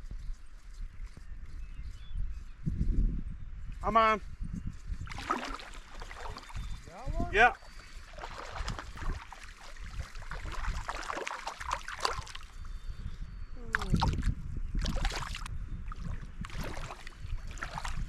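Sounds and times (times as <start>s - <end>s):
wind rumble on microphone: 0.0s - 18.0s
water splashing and trickling: 5.0s - 12.7s, 13.6s - 18.0s.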